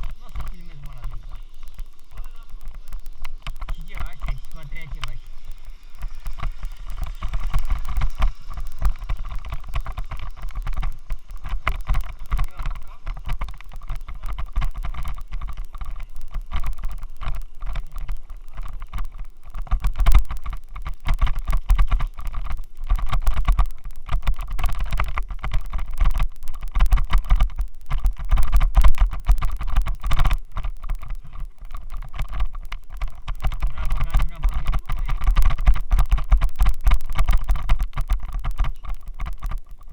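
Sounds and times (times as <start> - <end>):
heavy low rumble: 0.0 - 26.6
wind noise: 0.0 - 39.9.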